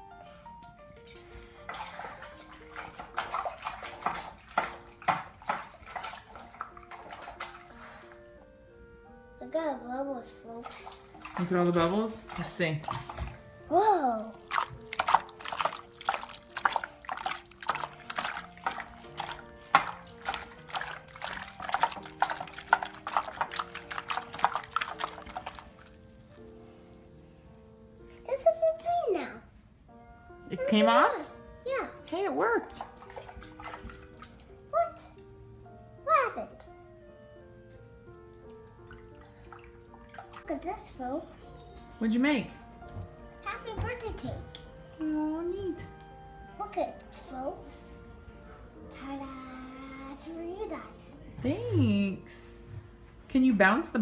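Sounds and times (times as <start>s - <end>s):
light piano music: 0.0s - 54.0s
slime squelching wetly: 1.2s - 8.4s, 10.4s - 28.2s, 32.7s - 35.2s, 37.4s - 41.8s.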